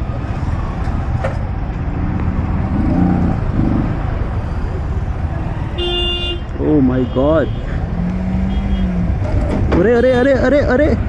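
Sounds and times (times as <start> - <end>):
road noise: 0.0 - 11.0
motorcycle engine: 1.7 - 6.5.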